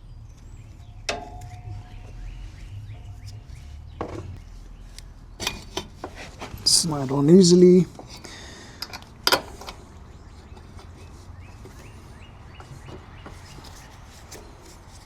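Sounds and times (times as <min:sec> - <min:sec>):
faint bird chirping: 0:00.0 - 0:05.6.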